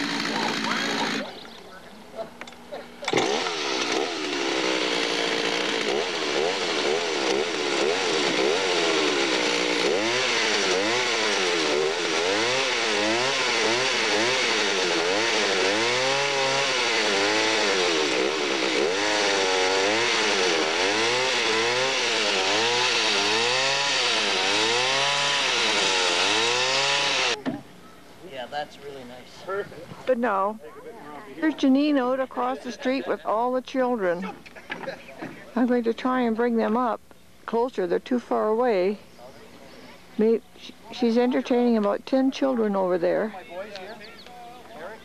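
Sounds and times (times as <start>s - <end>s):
chainsaw engine revving: 0.0s - 1.6s, 3.0s - 27.4s.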